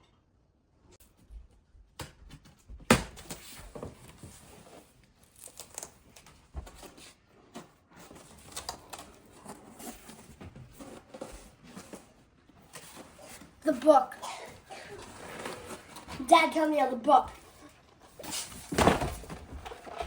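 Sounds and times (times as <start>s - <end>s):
cardboard rustling and scraping: 3.2s - 13.7s, 14.5s - 16.6s, 17.3s - 20.0s.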